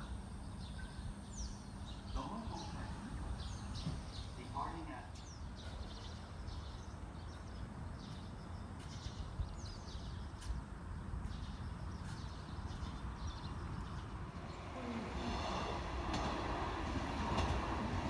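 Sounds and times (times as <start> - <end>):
birds chirping: 0.0 - 18.0.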